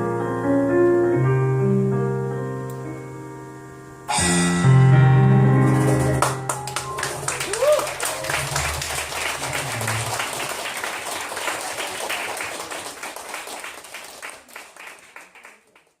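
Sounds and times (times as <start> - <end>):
live band music: 4.1 - 10.6
audience applauding: 5.7 - 16.0.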